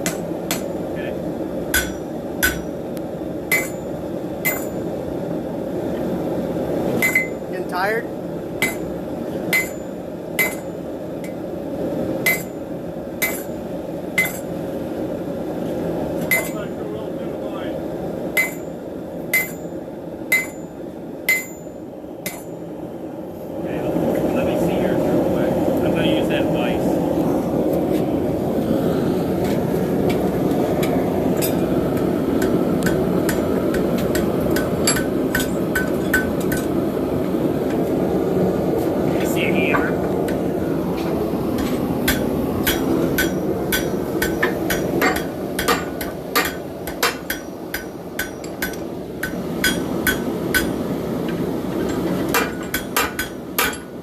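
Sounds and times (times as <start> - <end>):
hammer striking metal on anvil: 0.0 - 0.8, 1.7 - 2.8, 3.5 - 4.8, 7.0 - 7.4, 8.6 - 8.9, 9.5 - 11.4, 12.2 - 12.6, 13.2 - 13.6, 14.2 - 14.5, 16.2 - 16.6, 18.4 - 18.7, 19.3 - 19.7, 20.3 - 22.6, 31.4 - 36.7, 41.6 - 50.8, 52.3 - 53.9
steady low hum: 0.0 - 54.0
steady low roar: 26.7 - 33.2.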